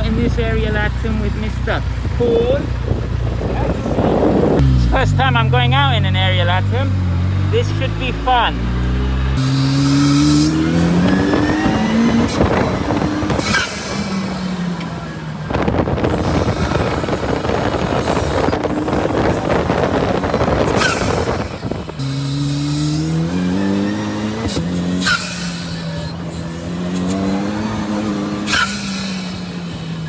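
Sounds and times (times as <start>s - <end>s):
turbocharged engine accelerating: 0.0s - 30.0s
wind rush: 1.6s - 5.0s, 9.4s - 25.5s.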